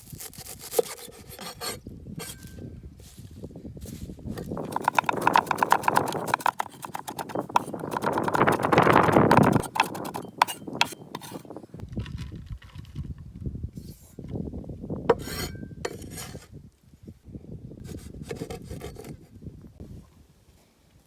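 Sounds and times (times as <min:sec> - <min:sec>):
scraping and rustling: 0:00.1 - 0:11.5
chopping on a wooden board: 0:04.6 - 0:11.4.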